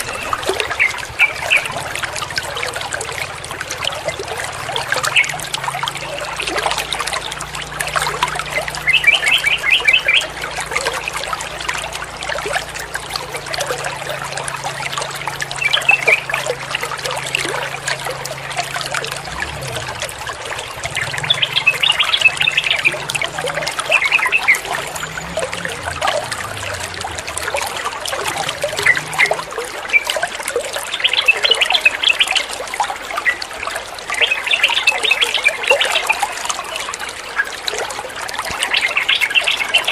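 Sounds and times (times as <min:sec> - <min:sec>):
bulbul singing: 0:00.0 - 0:11.9
water trickling: 0:00.0 - 0:39.9.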